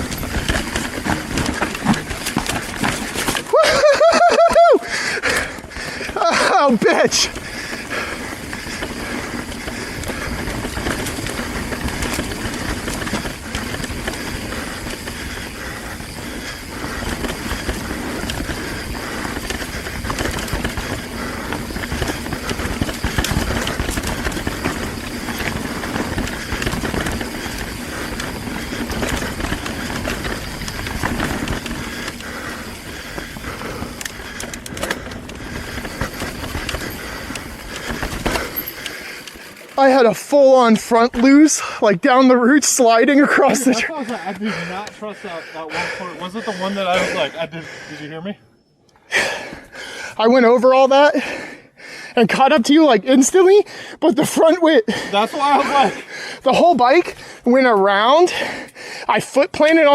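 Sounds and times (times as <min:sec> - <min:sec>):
low rumble of wind: 0:00.0 - 0:03.5, 0:07.3 - 0:39.8
bike frame rattling: 0:00.0 - 0:47.8, 0:54.2 - 0:59.9
bike tyres on dirt and roots: 0:00.0 - 0:48.3, 0:48.9 - 0:59.9.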